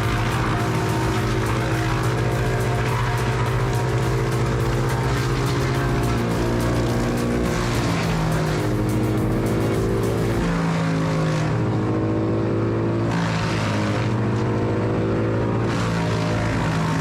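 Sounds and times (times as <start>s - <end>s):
electronic music: 0.0s - 11.6s.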